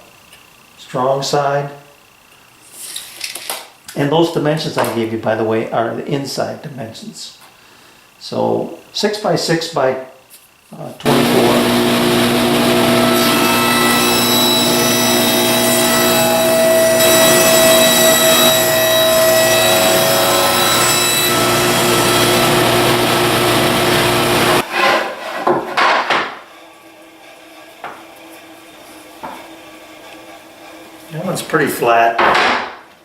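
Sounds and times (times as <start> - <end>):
woodworking machine machining board: 11.1 - 24.6
wooden boards knocking: 25.4 - 26.4, 32.2 - 32.8.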